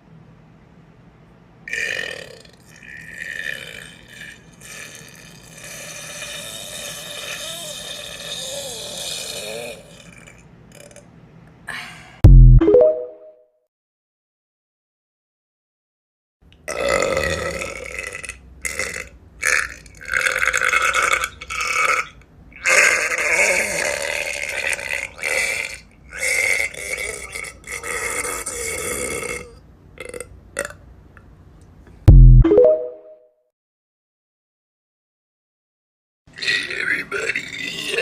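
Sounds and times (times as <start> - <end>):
person burping: 1.7 - 11.0, 16.7 - 30.8
loud low thump: 12.2 - 12.6, 32.1 - 32.5.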